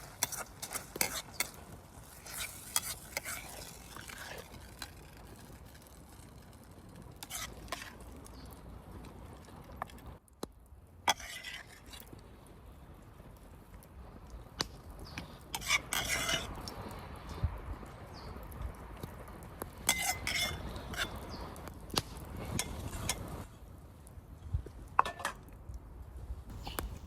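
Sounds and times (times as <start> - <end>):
metal utensils scraping a pan: 0.0 - 5.4, 7.2 - 8.0, 11.1 - 12.0, 15.5 - 16.5, 19.9 - 21.2
soft hiss: 26.5 - 27.0.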